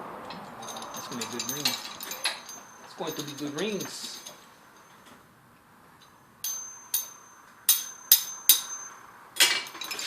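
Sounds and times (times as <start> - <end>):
metal spur clinking: 0.3 - 5.0
high thin metallic ringing: 0.3 - 5.1, 6.0 - 10.0.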